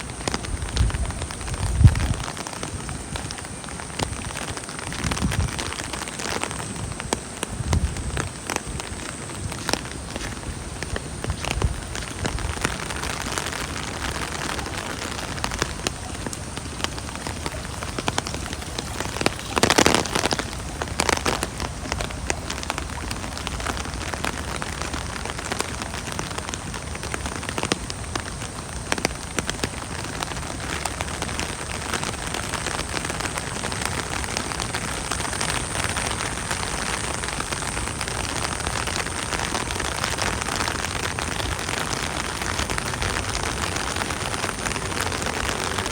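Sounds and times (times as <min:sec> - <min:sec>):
rain pattering: 0:00.0 - 0:45.9.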